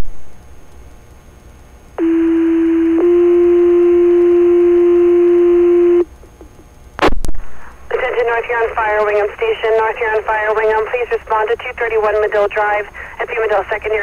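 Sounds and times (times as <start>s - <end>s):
radio hiss: 7.0s - 14.0s.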